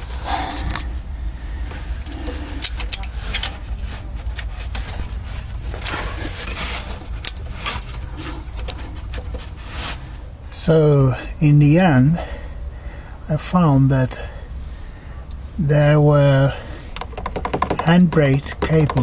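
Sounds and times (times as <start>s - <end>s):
steady low hum: 0.0s - 19.0s
sharp clicks and light knocks: 7.0s - 9.5s, 16.9s - 19.0s.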